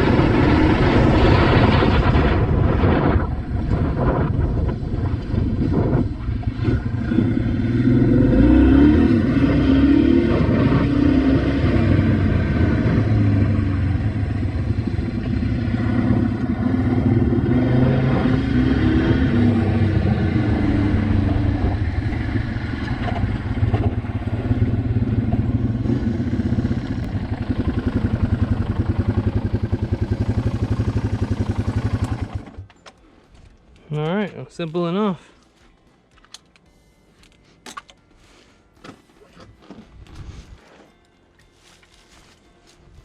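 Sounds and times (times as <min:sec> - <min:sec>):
motorcycle engine running: 0:00.0 - 0:32.7.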